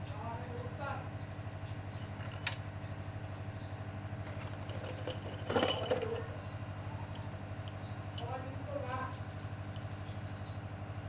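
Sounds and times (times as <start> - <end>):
pulsing mechanical hum: 0.0 - 11.0
short clatter: 4.2 - 6.5.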